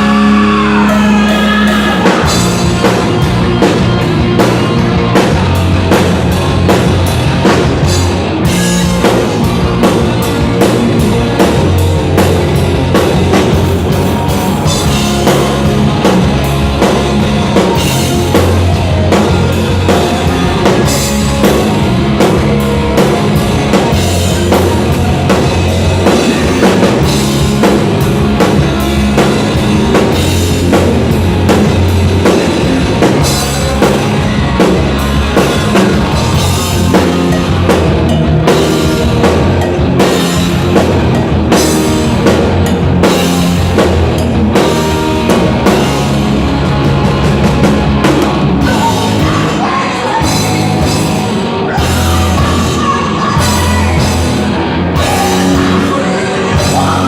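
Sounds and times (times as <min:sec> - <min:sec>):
live rock band playing: 0:00.0 - 0:57.0.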